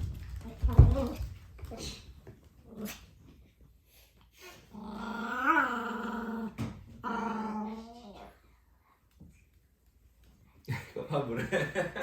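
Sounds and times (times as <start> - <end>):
puppy growling: 2.6 - 3.3, 4.6 - 8.4.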